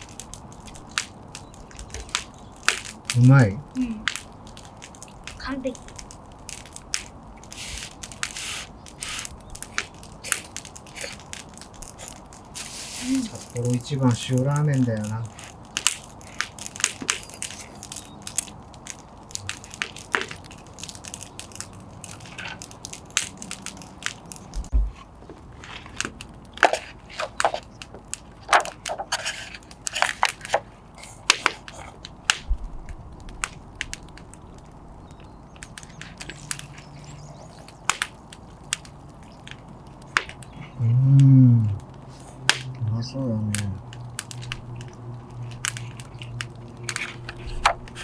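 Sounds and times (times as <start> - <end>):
wood fire crackling and popping: 0.0 - 48.0
dull low thumps: 24.6 - 25.0.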